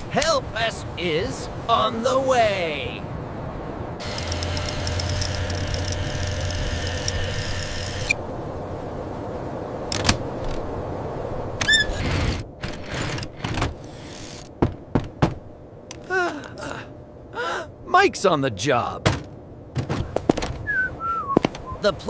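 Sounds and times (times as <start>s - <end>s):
short wavering squeal: 11.6s - 12.1s
sharp knocks: 14.6s - 15.4s.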